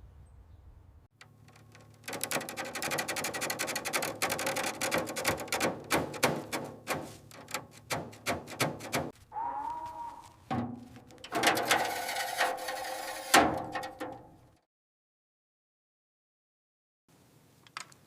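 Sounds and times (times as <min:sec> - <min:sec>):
small hard clicks and taps: 0:01.2 - 0:09.1.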